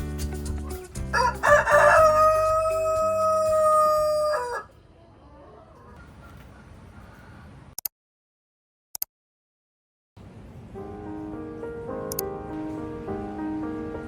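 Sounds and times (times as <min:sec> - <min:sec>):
rooster crowing: 0:01.1 - 0:04.8.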